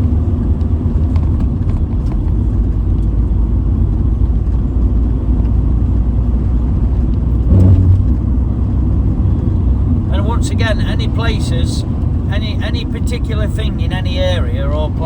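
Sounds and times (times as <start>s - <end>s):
road noise: 0.0s - 15.0s
vehicle engine: 0.0s - 15.0s.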